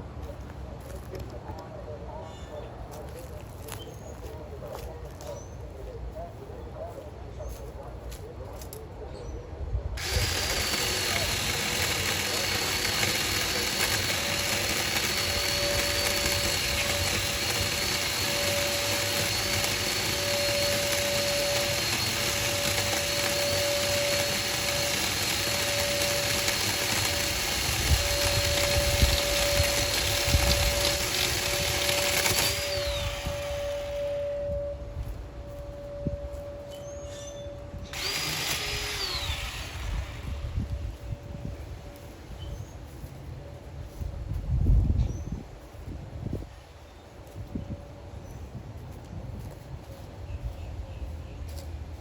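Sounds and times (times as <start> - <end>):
chainsaw whining while cutting: 10.0 - 34.4, 37.9 - 40.8.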